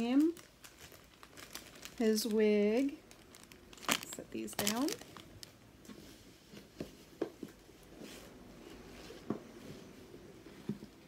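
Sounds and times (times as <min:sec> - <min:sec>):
packaging rustling: 0:00.0 - 0:05.6.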